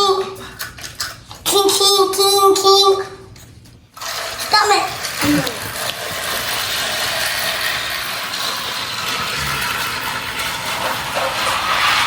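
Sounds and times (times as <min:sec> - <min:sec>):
toy train gear whir: 0:04.0 - 0:12.0.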